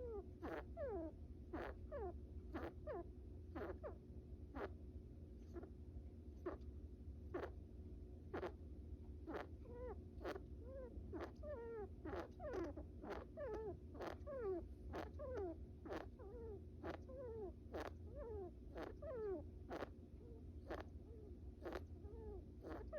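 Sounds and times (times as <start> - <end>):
rat snoring: 12.1 - 16.1, 17.7 - 17.9, 18.7 - 19.9, 20.6 - 20.8, 21.6 - 21.9, 22.6 - 22.9.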